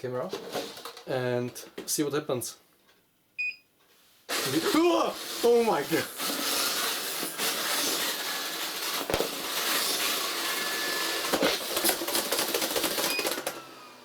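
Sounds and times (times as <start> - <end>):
robot vacuum running: 4.3 - 14.0.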